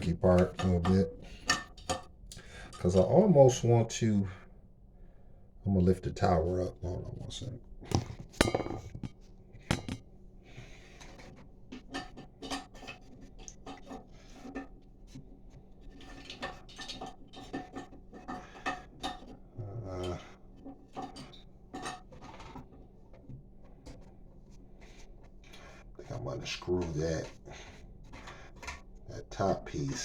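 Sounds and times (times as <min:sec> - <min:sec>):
clicks clinks and scraping: 0:07.9 - 0:10.0
dull knock: 0:09.7 - 0:10.0.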